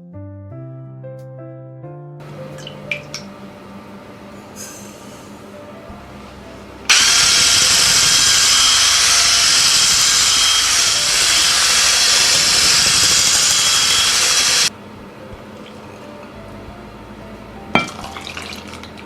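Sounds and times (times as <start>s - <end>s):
electric mixer running: 6.9s - 14.7s.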